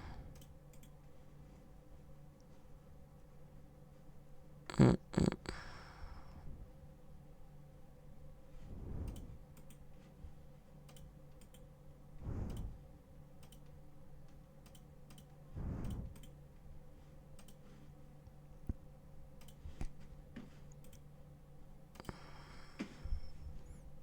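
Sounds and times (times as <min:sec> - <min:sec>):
low electrical hum: 0:00.0 - 0:24.0
soft low rushes of noise: 0:08.5 - 0:09.5, 0:12.2 - 0:12.9, 0:15.5 - 0:16.3.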